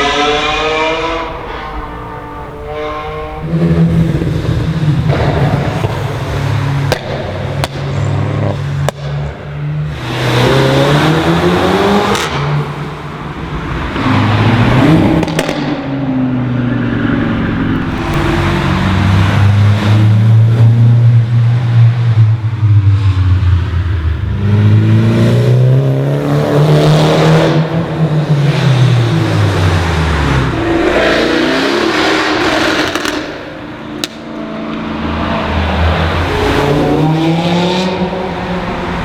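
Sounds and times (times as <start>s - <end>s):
car engines revving: 0.0s - 39.0s
exhaust pops: 3.8s - 9.4s.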